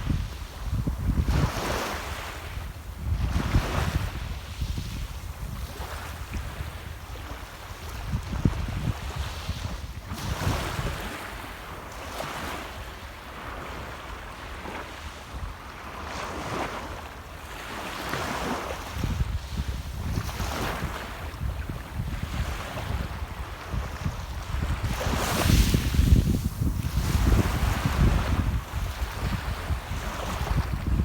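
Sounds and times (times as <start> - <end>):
wind rumbling on microphone: 0.0 - 11.8, 18.4 - 31.0
sea waves breaking on shore: 0.0 - 31.0.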